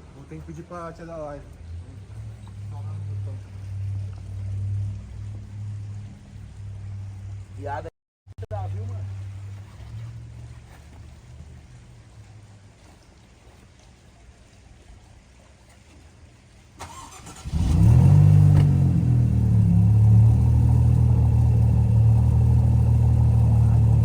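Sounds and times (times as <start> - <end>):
car engine idling: 16.8 - 24.0
car engine starting and revving: 16.8 - 24.0.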